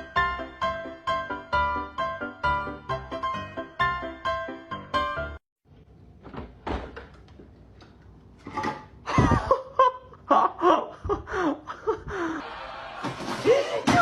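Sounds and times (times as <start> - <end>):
person laughing: 9.1 - 12.4.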